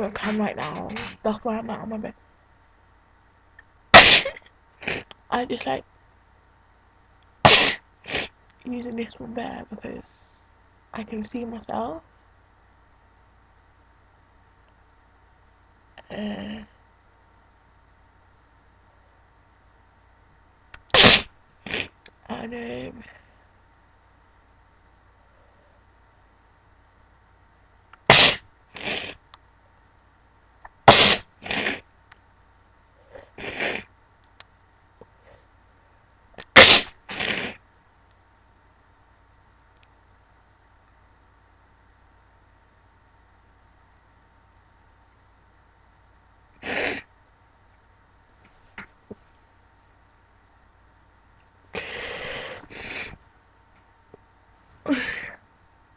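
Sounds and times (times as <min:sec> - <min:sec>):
woman sneezing: 0:00.2 - 0:01.2, 0:04.0 - 0:05.1, 0:07.5 - 0:08.3, 0:20.9 - 0:21.9, 0:28.1 - 0:29.2, 0:30.9 - 0:31.8, 0:36.5 - 0:37.6, 0:54.8 - 0:55.4.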